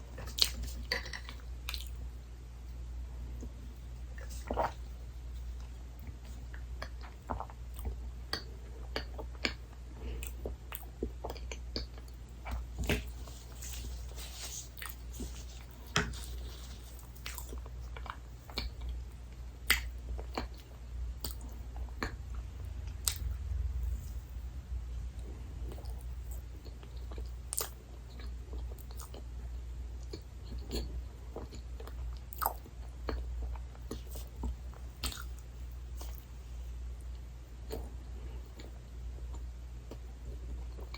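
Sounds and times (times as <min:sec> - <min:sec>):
wet chewing: 0:06.5 - 0:19.0, 0:23.0 - 0:23.4, 0:30.0 - 0:35.4
biting soft dessert: 0:19.6 - 0:23.4.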